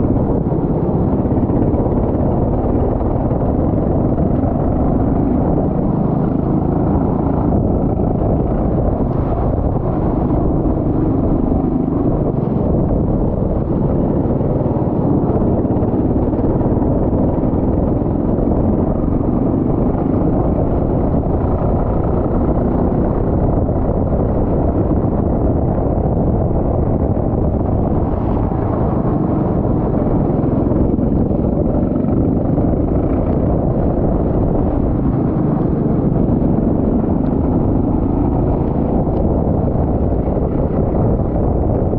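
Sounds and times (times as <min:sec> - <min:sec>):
go-kart engine running: 0:00.0 - 0:41.9.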